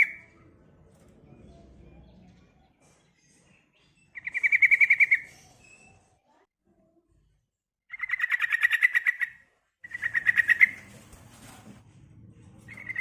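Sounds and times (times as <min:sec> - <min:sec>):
bird rattling trilled calls: 0:07.9 - 0:10.9.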